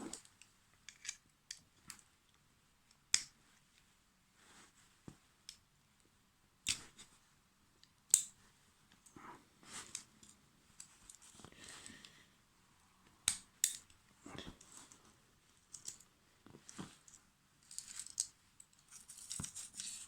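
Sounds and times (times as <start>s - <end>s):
metal tool clicks: 13.3s - 13.9s.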